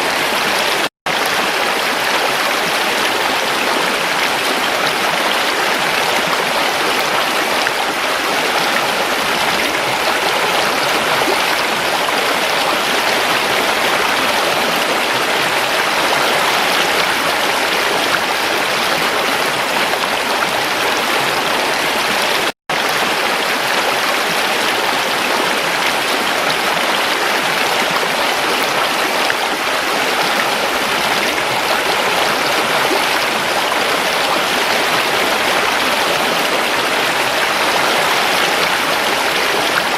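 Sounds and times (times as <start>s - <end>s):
creek water running: 0.0s - 39.9s.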